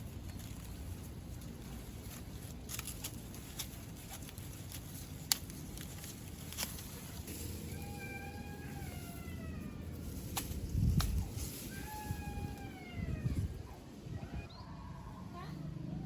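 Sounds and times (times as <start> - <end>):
low background rumble: 0.0 - 16.0
long meowing animal call: 7.6 - 9.8, 11.6 - 13.5.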